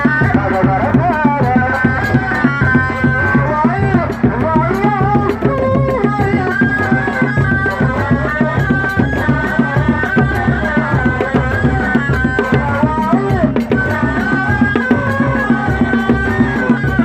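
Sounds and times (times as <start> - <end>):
drums beating fast rhythm: 0.0 - 17.0.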